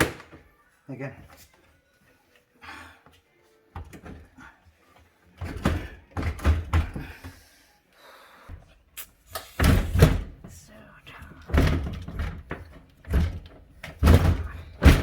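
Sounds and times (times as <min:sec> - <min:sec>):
dishwasher knocking in cabinet: 0:11.5 - 0:15.0.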